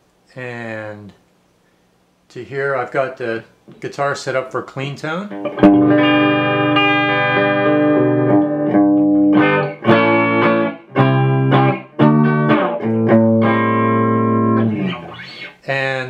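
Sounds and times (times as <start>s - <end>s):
electric guitar chords: 5.3s - 15.5s.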